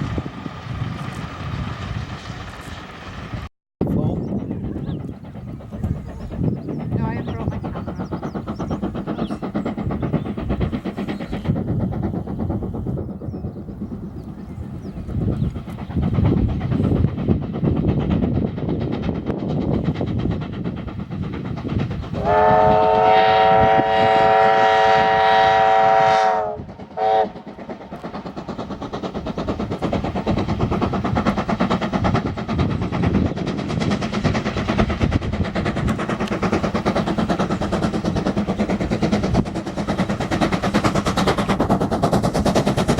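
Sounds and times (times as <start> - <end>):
steam locomotive chugging: 0.0 - 42.9
steam whistle blast: 22.2 - 27.3.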